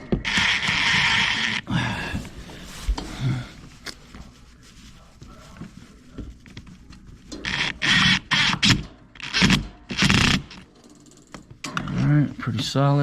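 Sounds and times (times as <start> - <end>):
hose scraping and rubbing: 0.2 - 8.8.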